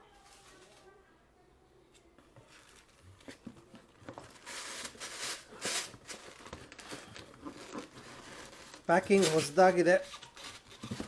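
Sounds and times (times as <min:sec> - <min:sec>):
packing material rustling: 0:02.4 - 0:11.0.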